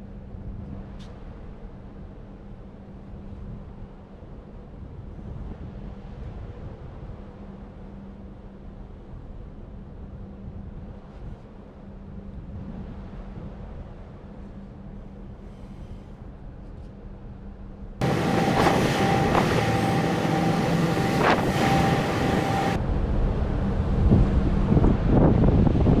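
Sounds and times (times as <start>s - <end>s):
wind on microphone: 8.7s - 16.4s, 18.0s - 26.0s
machinery whine: 18.0s - 22.8s
ship machinery humming: 18.0s - 22.8s
loud low rumbling: 18.0s - 26.0s.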